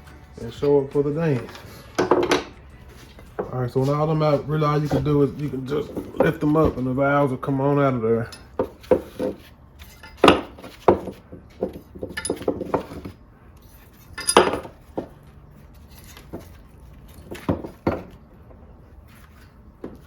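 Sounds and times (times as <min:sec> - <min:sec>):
metal valves clinking: 0:13.6 - 0:14.8.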